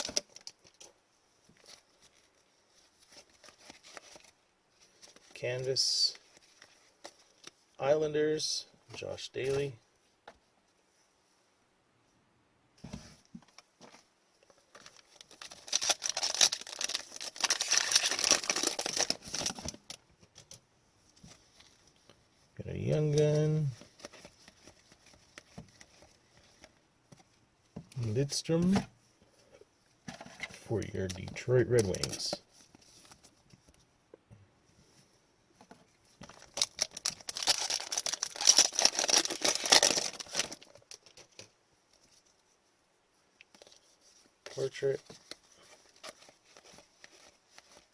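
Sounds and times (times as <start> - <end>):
foil wrapper tearing and crinkling: 14.8 - 20.0, 36.4 - 41.5.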